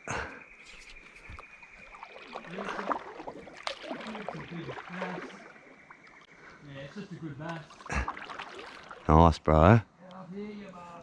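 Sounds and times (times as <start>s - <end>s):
water splashing and sloshing: 0.6s - 6.5s, 7.4s - 9.8s.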